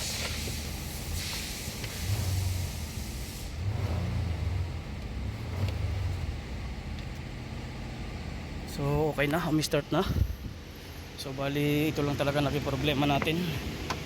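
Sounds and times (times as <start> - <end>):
hiss: 0.0 - 4.0
car engine running: 0.0 - 14.0.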